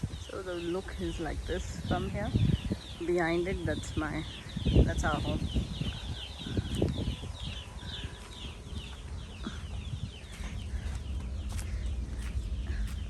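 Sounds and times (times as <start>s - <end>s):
birds chirping: 0.0s - 13.0s
wind rumble on microphone: 0.0s - 13.0s.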